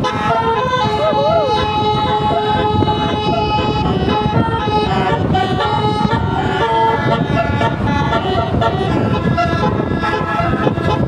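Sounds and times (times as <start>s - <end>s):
bus horn playing a tune: 0.0s - 11.0s
dense low rumble: 0.0s - 11.0s.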